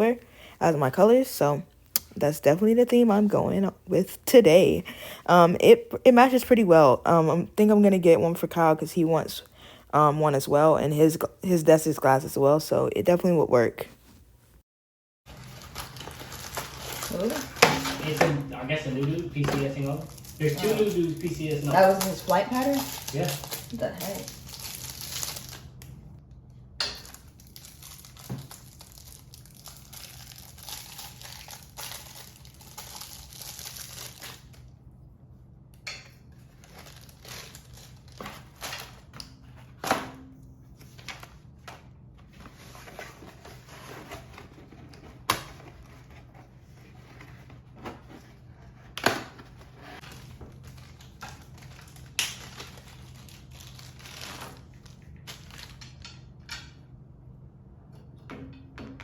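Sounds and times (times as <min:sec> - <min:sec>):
crinkling and rustling: 0:15.3 - 0:25.8, 0:27.0 - 0:34.7, 0:36.3 - 0:39.9, 0:40.6 - 0:56.6.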